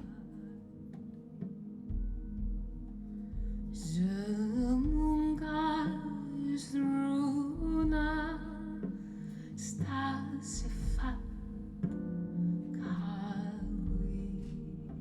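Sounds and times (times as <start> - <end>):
slow soft music with deep bass: 0.0 - 15.0.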